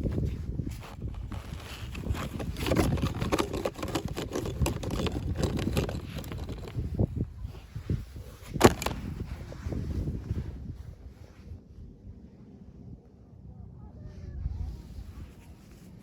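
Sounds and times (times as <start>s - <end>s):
toy packaging rustling and crinkling: 8.6s - 9.1s.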